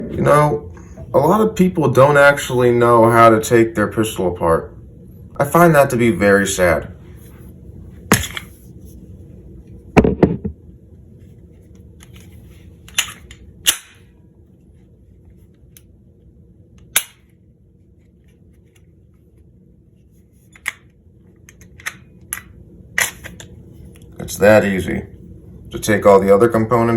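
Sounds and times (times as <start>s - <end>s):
pistol metallic clicks: 12.9s - 14.0s.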